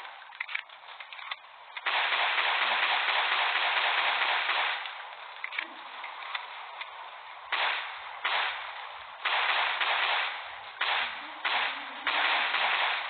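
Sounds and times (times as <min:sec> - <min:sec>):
pistol shots: 0:01.8 - 0:05.0, 0:07.5 - 0:13.0.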